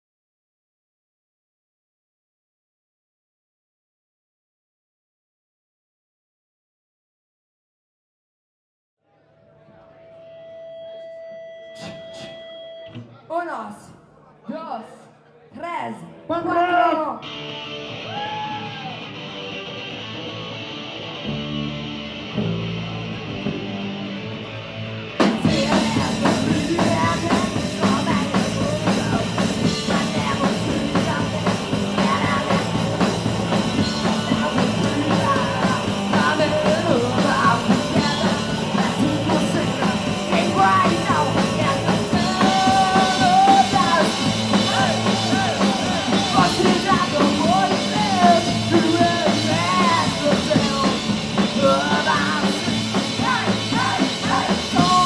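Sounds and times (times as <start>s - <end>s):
live punk rock band: 17.2s - 55.0s
person singing: 25.2s - 55.0s.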